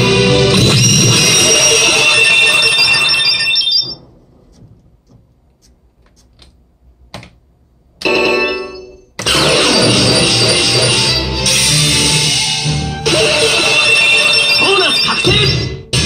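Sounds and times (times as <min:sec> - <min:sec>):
electronic chiming tones: 0:00.5 - 0:04.0, 0:13.0 - 0:15.7.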